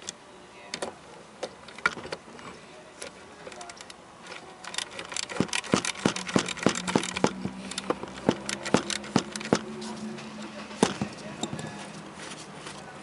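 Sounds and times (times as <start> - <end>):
sharp clicks: 3.5 - 9.7.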